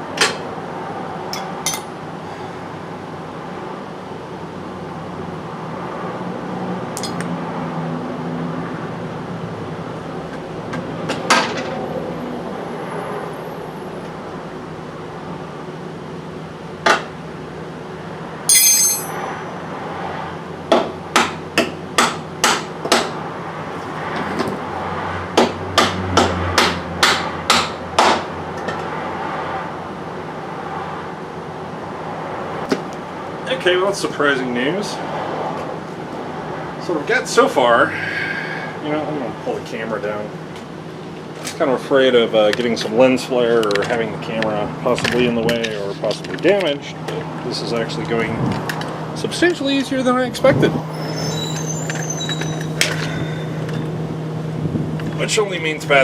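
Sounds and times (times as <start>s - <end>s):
hammer striking metal: 1.3s - 1.9s, 7.0s - 7.3s, 18.5s - 19.5s
metal ringing clink: 1.3s - 1.9s, 7.0s - 7.3s, 18.5s - 19.5s.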